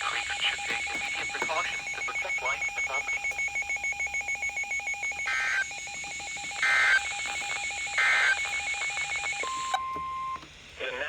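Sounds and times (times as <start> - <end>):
rapid electronic beeping: 0.0 - 9.7
digital data tone bursts: 6.6 - 9.8.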